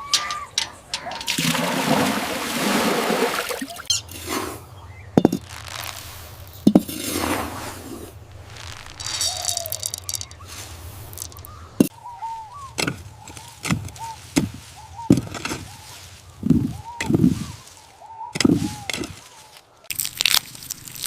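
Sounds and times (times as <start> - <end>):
short high chirping calls: 3.6 - 4.2, 8.5 - 14.3.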